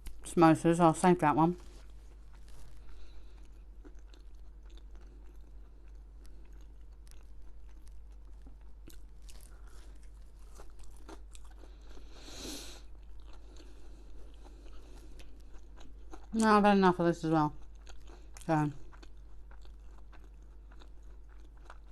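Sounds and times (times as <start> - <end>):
chewing and crunching food: 0.0 - 21.9.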